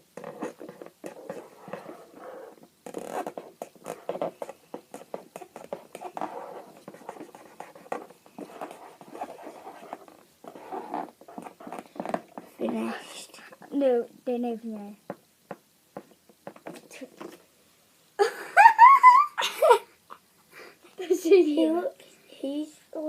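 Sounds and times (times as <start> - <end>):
pens scribbling on paper: 0.2 - 12.5.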